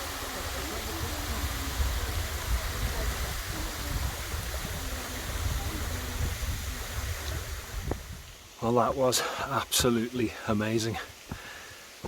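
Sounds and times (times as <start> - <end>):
faint distant voices: 0.0 - 7.9
wind buffeting microphone: 0.0 - 8.4
waterfall rushing: 0.0 - 12.0.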